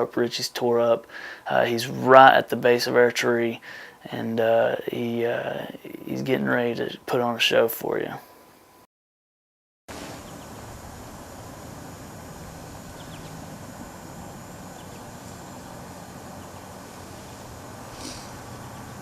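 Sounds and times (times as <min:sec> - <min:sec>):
background hiss: 0:00.0 - 0:08.8, 0:09.9 - 0:19.0
faint high bird chirps: 0:12.9 - 0:13.5
short breathy burst: 0:17.9 - 0:18.5.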